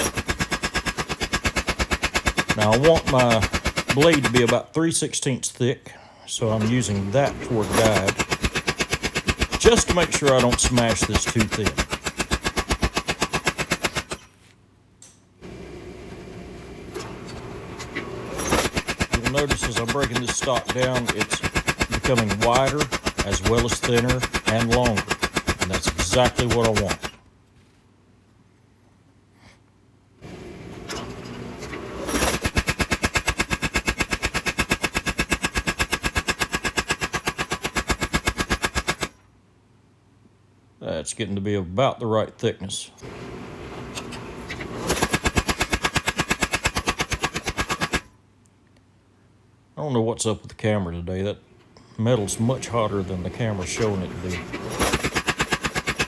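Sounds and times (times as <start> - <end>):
power hammer pounding steel: 0.0 - 4.7, 6.5 - 14.3, 18.0 - 27.2, 30.3 - 39.1, 43.9 - 48.1, 52.2 - 56.0
machine hum: 15.4 - 27.2, 30.2 - 34.5, 43.0 - 46.0, 51.8 - 56.0.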